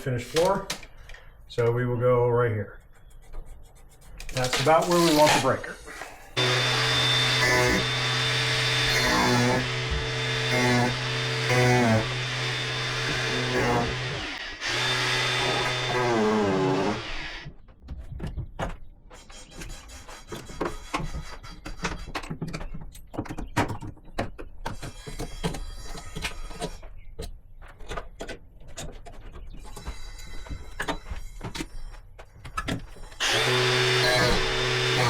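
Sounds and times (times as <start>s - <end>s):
electric drill boring wood: 6.4s - 17.5s, 33.2s - 35.0s.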